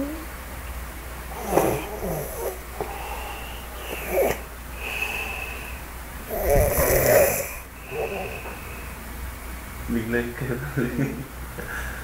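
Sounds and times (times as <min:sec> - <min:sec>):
person snoring: 0:01.3 - 0:09.0.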